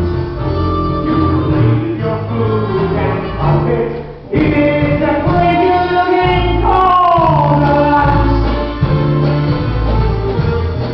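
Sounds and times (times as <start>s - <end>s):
instrumental accompaniment: 0.0s - 10.9s
person singing: 0.8s - 8.8s.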